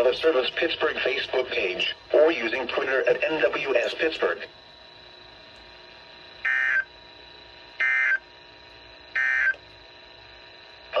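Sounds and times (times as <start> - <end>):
faint high whine: 0.0 - 11.0
buzzy digital data tones: 6.4 - 7.0, 7.7 - 8.3, 9.1 - 9.6.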